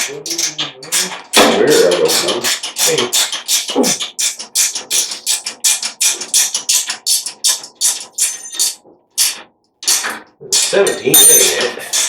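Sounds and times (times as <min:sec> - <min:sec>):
ratchet wrench clicking: 0:02.4 - 0:10.1.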